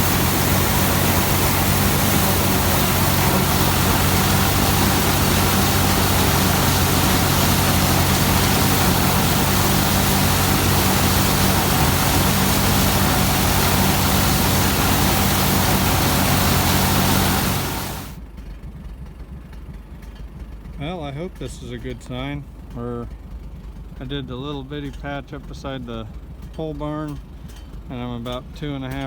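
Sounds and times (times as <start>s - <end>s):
threshing machinery noise: 0.0s - 18.2s
combine harvester running: 0.0s - 29.0s.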